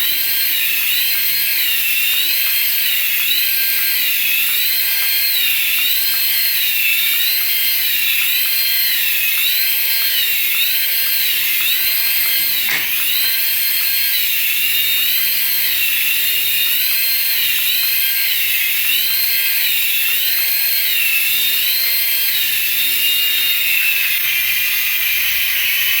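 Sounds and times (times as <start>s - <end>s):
rc toy high-pitched whine: 0.0s - 26.0s
sharp click: 12.0s - 14.1s.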